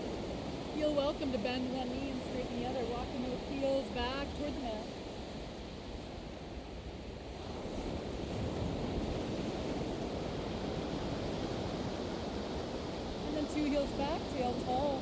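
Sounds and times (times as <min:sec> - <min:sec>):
wind rumbling on microphone: 0:00.0 - 0:15.0
ocean surf breaking: 0:07.4 - 0:15.0.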